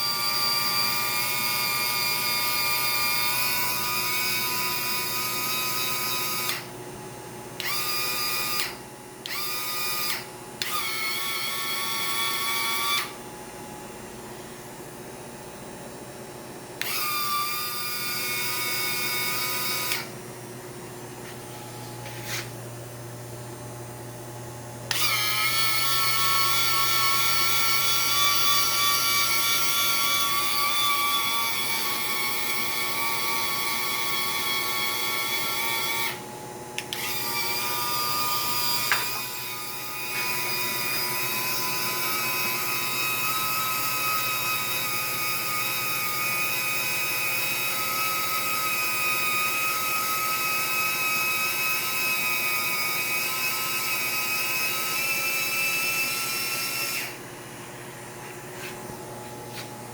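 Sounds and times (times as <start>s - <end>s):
small electric motor whining: 0.0s - 6.7s, 7.6s - 13.2s, 16.8s - 20.2s, 21.2s - 22.6s, 24.9s - 57.3s
steady low hum: 3.8s - 32.2s, 57.2s - 59.9s.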